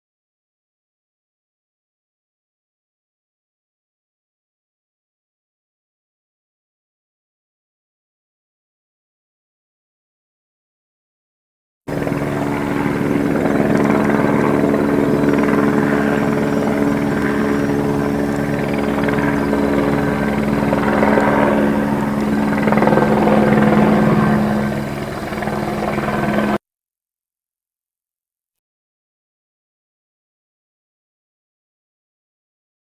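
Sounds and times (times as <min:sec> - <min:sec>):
helicopter engine drone: 0:11.9 - 0:26.6
helicopter rotor blades chopping: 0:11.9 - 0:26.6.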